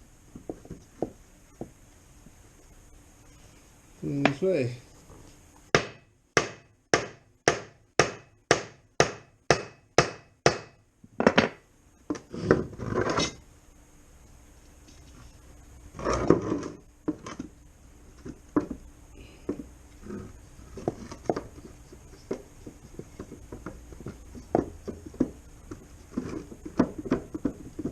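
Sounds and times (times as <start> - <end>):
hammer striking wood block: 5.7 - 11.6
scraping and knocks: 11.2 - 13.4, 16.0 - 18.8, 19.4 - 27.9.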